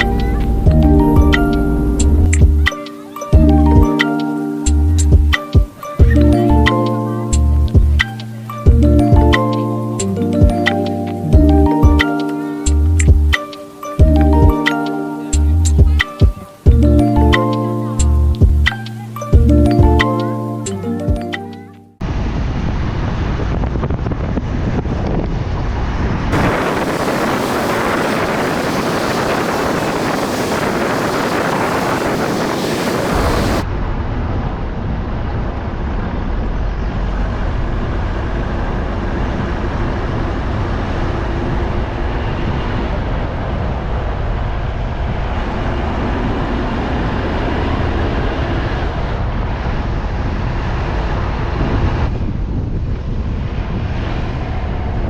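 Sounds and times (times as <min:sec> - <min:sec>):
road and engine rumble: 0:00.0 - 0:02.8, 0:26.3 - 0:50.1
wind on microphone: 0:22.0 - 0:55.0.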